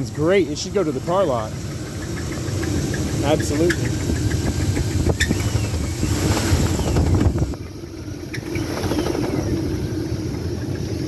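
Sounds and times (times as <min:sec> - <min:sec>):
engine idling with heavy knock: 0:00.0 - 0:11.0.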